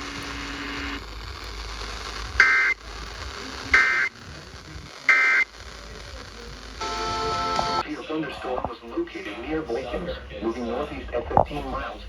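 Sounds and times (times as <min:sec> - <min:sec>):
two-tone digital data bursts: 0:02.4 - 0:02.8, 0:03.6 - 0:04.2, 0:05.0 - 0:05.6, 0:06.8 - 0:07.8.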